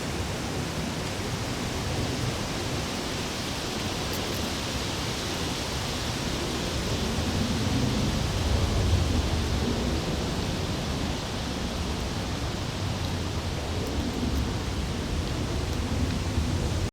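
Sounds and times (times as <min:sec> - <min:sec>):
wind buffeting microphone: 0:05.2 - 0:16.9.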